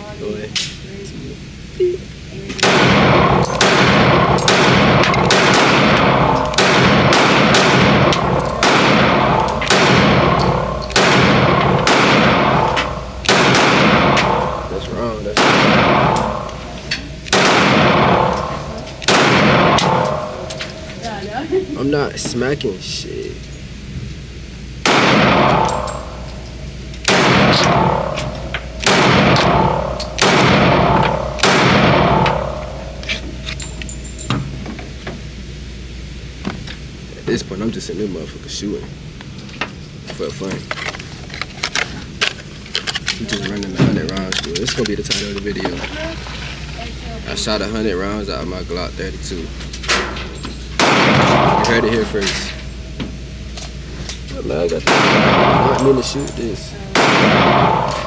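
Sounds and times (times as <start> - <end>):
pistol shots echoing: 2.6 - 21.0, 24.8 - 34.3, 49.9 - 52.6, 54.8 - 56.4, 57.0 - 58.0.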